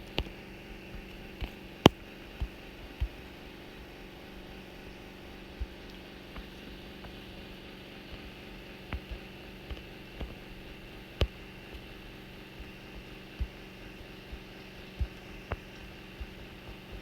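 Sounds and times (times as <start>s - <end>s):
low hum with hiss: 0.0s - 17.0s.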